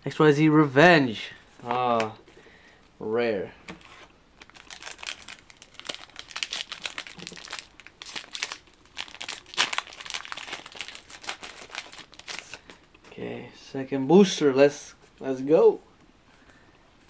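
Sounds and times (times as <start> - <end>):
foil wrapper crinkling: 4.4 - 12.9.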